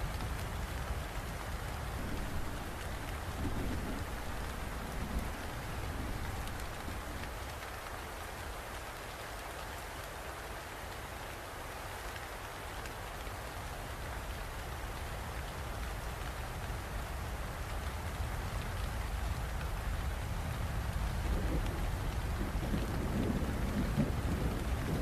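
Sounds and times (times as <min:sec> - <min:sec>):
steady rain falling: 0:00.0 - 0:25.0
distant thunder rumble: 0:01.9 - 0:07.3, 0:20.8 - 0:25.0.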